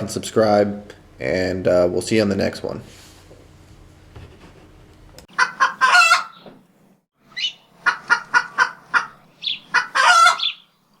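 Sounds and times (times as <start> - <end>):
chicken cackling: 5.3 - 6.4, 7.4 - 10.7.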